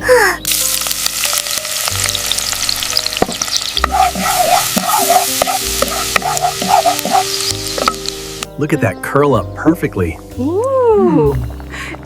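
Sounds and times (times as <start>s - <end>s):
soft background music: 0.0s - 12.0s
food sizzling in a hot pan: 0.5s - 8.6s.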